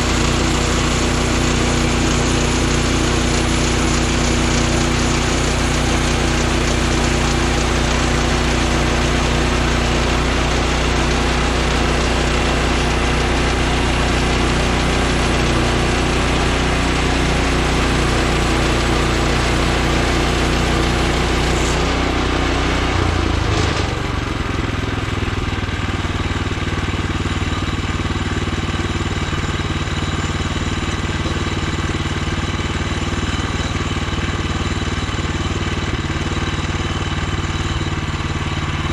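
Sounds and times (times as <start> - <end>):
band blade running: 0.0 - 22.9
sawmill gas engine running: 0.0 - 38.9.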